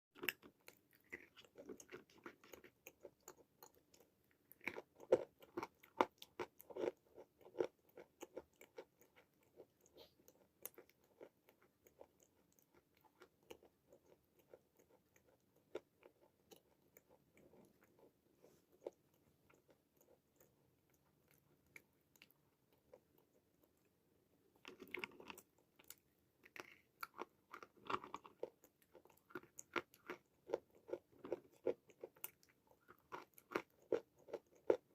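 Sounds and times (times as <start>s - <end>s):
crisp chewing crunches: 0.2s - 23.3s, 24.6s - 34.9s.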